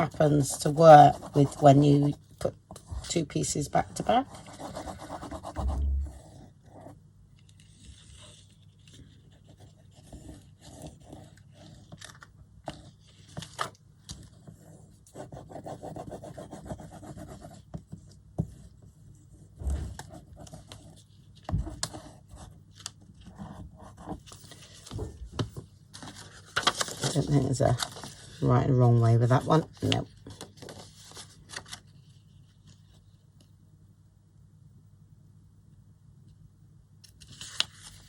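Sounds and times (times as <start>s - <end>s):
paper rubbing and scraping: 7.5s - 14.6s, 23.6s - 33.0s.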